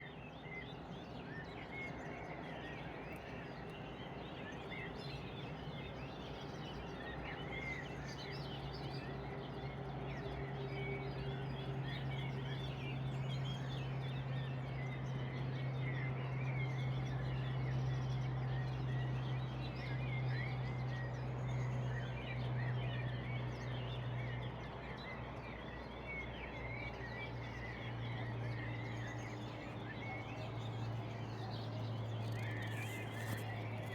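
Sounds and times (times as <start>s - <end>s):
steady low hum: 29.4s - 33.9s
small birds chirping: 30.5s - 33.9s.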